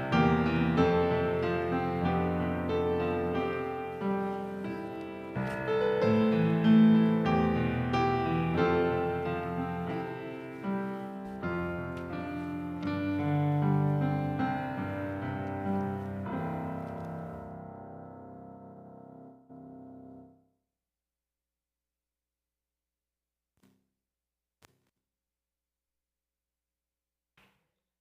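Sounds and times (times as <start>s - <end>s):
solo piano slow chords: 0.0s - 20.6s.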